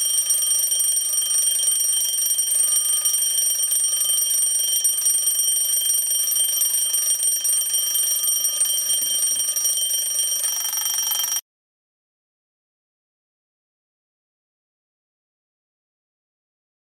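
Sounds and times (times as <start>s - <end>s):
bell alarm clock ringing: 0.0s - 11.4s.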